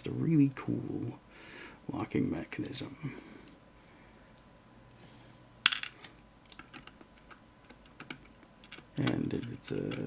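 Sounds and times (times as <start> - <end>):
metal lock parts clinking: 5.7 - 10.0
light handling ticks: 6.5 - 10.0.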